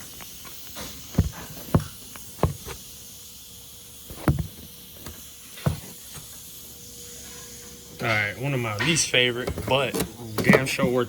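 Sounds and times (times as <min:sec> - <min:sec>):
steady hiss: 0:00.0 - 0:11.0
dull thumps: 0:01.0 - 0:02.9, 0:04.1 - 0:06.3.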